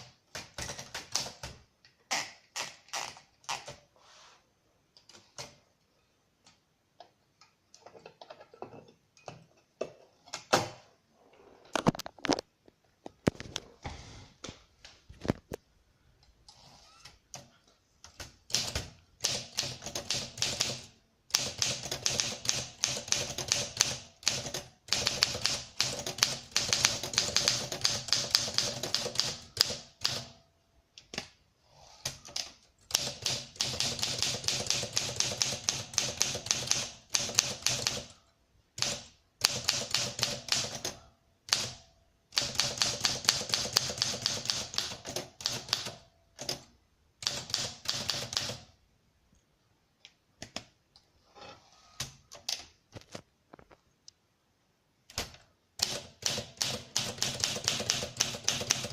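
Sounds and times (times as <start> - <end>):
manual typewriter typing: 0.0 - 1.6, 17.3 - 30.4, 32.0 - 38.2, 38.8 - 48.7, 55.1 - 58.9.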